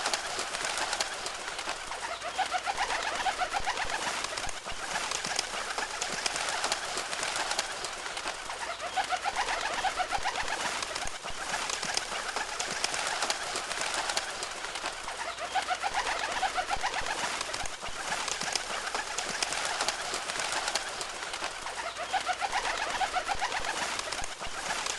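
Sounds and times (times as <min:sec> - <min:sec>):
bird calls: 0:00.0 - 0:24.9
bird wingbeats: 0:00.0 - 0:24.9
warbling bird calls: 0:00.0 - 0:24.9.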